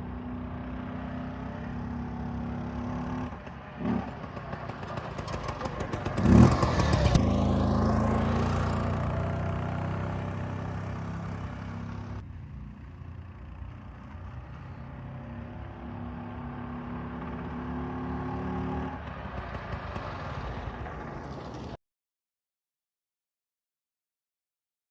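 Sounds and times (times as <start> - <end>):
scooter engine revving: 0.2 - 12.2, 14.6 - 21.8.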